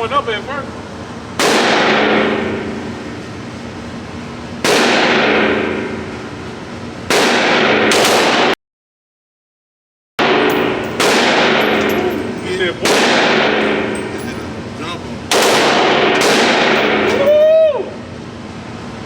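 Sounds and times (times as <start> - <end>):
gunshots with ringing echo: 10.2 - 14.7, 15.3 - 17.3.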